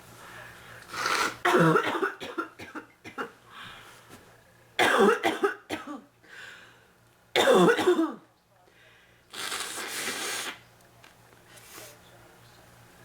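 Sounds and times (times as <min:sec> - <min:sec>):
woman coughing: 0:01.4 - 0:03.3, 0:04.8 - 0:06.1, 0:07.4 - 0:08.2.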